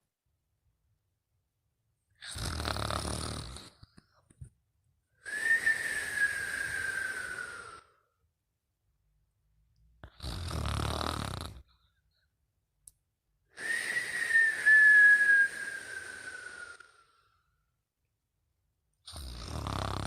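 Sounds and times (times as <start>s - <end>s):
person snoring: 2.2s - 3.8s, 5.3s - 8.0s, 10.0s - 11.7s, 13.6s - 17.2s, 19.1s - 20.0s
whistling breath: 5.2s - 8.2s, 13.5s - 17.6s.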